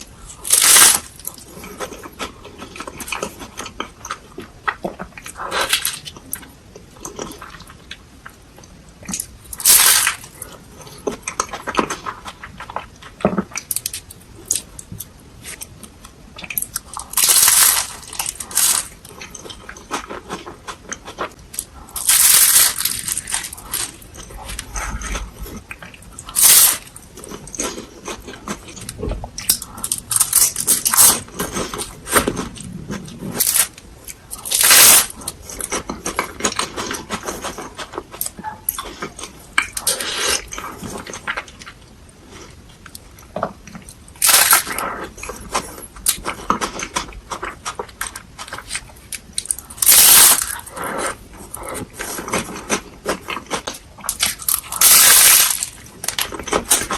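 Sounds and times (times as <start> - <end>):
crunchy crinkly bursts: 16.8 - 20.1, 21.6 - 25.2, 26.2 - 28.4, 29.5 - 32.6, 33.3 - 37.9, 44.2 - 45.9, 48.4 - 51.2, 52.0 - 56.9.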